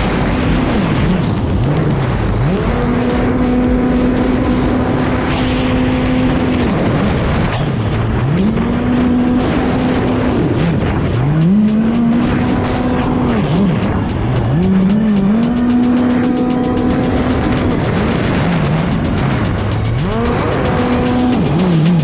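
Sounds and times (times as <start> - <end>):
jet ski engine revving: 0.0 - 22.0
steady rushing hiss: 10.9 - 22.0.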